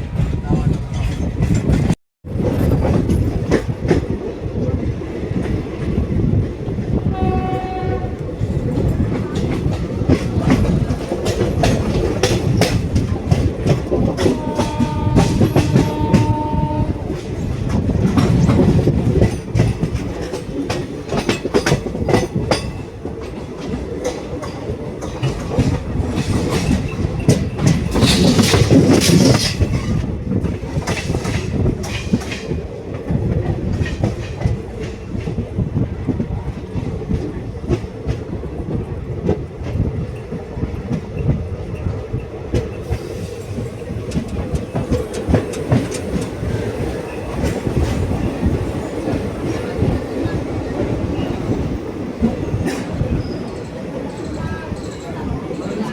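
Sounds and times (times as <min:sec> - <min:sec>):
train wheels clattering on rails: 0:00.0 - 0:55.9
train horn blasts: 0:07.1 - 0:08.3, 0:14.2 - 0:17.2.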